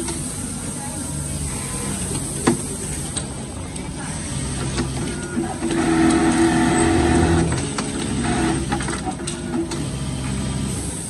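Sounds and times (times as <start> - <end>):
sewing machine hum: 5.6 - 9.0.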